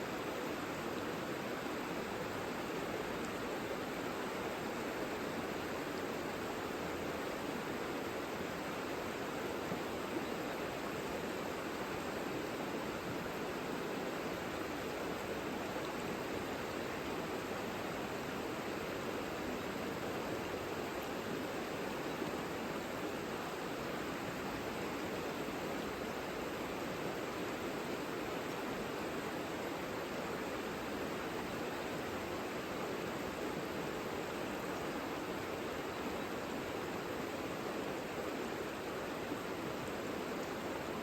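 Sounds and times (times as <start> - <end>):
river flowing: 0.0 - 41.0.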